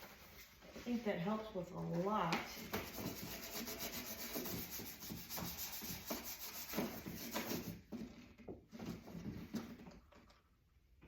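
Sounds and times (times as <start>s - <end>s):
brush scrubbing dishwasher: 0.0s - 7.9s.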